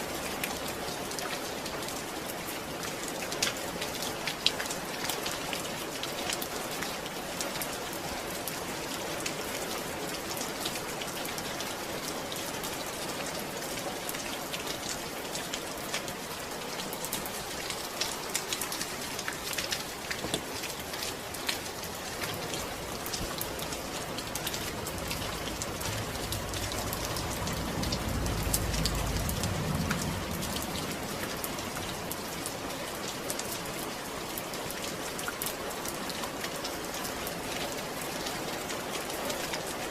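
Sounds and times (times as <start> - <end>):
steady rain patter: 0.0 - 39.9
low rumble: 23.0 - 32.2.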